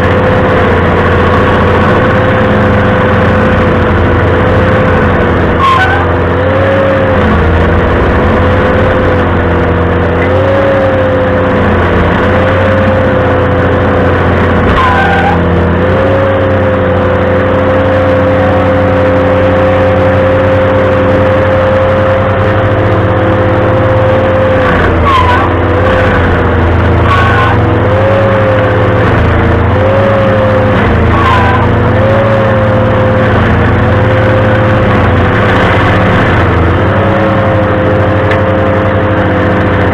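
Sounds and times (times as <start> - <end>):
stump grinder running: 0.0 - 39.9
short squeals: 2.9 - 10.9, 13.9 - 16.1, 23.9 - 36.6.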